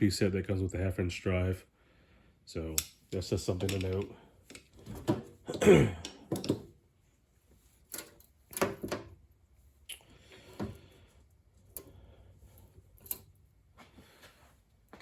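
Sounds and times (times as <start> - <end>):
tools knocking and clattering: 2.8 - 6.8, 7.9 - 9.2.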